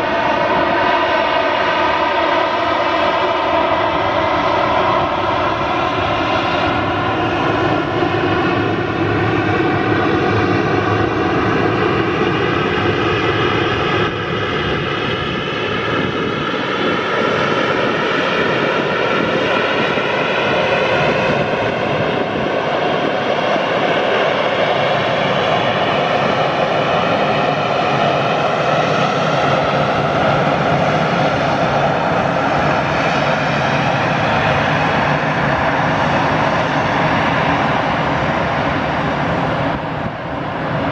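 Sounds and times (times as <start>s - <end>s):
jet engines droning: 0.0s - 40.9s.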